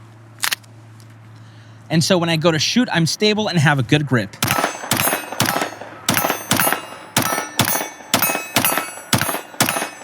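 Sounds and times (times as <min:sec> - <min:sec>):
metallic ringing: 0:04.4 - 0:10.0
pistol shots: 0:04.4 - 0:10.0.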